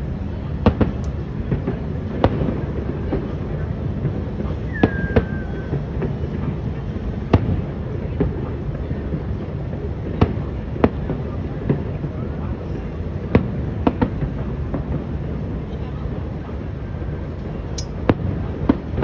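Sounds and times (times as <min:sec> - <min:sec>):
fireworks bangs: 0:00.6 - 0:06.6
falling whistle: 0:04.6 - 0:05.8.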